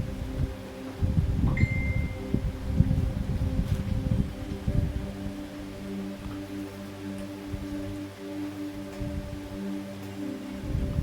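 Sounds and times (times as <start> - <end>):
faint steady hum: 0.0 - 11.0
high ping: 1.6 - 2.2.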